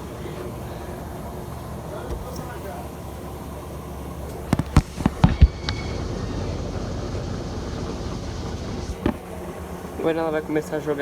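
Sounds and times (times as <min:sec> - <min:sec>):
washing machine humming: 0:00.0 - 0:11.0
sharp knocks: 0:04.5 - 0:05.9.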